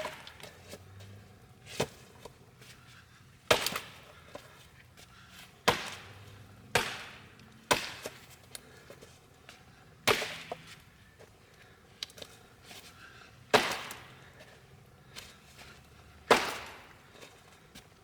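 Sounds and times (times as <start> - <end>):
axe striking firewood: 0.0 - 0.6, 3.5 - 4.1, 5.6 - 8.5, 10.0 - 10.8, 13.5 - 14.5, 16.2 - 17.3.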